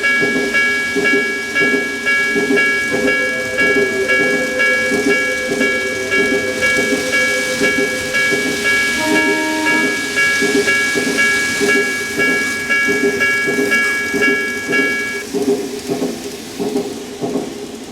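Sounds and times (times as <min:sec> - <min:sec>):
level crossing warning bell: 0:00.0 - 0:15.2
model train rumbling on track: 0:00.0 - 0:17.9
held horn tone: 0:06.2 - 0:13.0.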